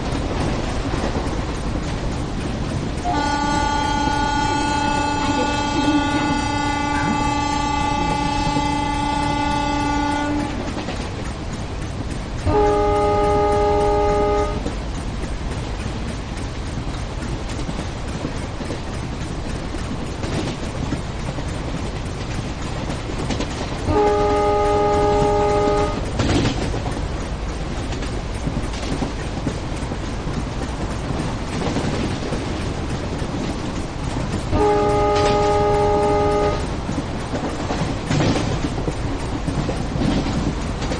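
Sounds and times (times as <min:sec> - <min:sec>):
train rumbling: 0:00.0 - 0:40.9
wheels clattering over rail joints: 0:00.0 - 0:40.9
train horn blast: 0:03.0 - 0:10.7, 0:12.4 - 0:14.7, 0:23.9 - 0:26.1, 0:34.5 - 0:36.7.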